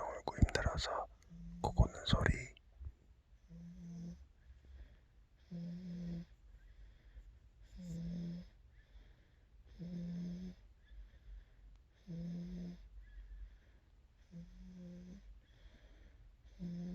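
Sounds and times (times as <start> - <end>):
soft breathing: 0.0 - 2.6, 3.5 - 16.9.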